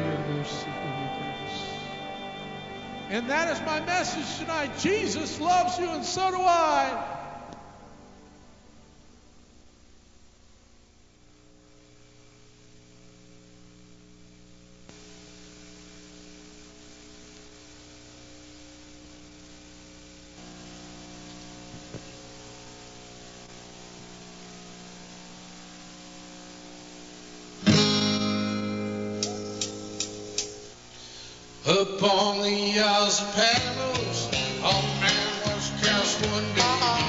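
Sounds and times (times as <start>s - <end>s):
loud guitar strum: 0.0s - 8.2s, 27.6s - 31.1s
low steady hum: 0.0s - 37.0s.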